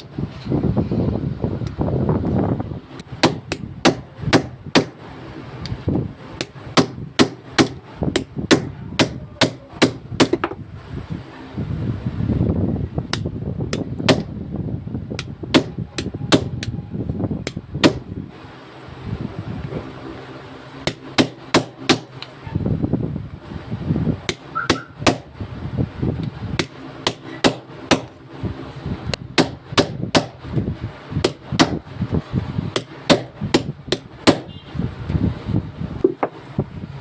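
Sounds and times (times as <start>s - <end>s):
dull handling noise: 0.0s - 10.7s, 35.9s - 36.8s
hammer tapping on metal: 6.4s - 10.6s.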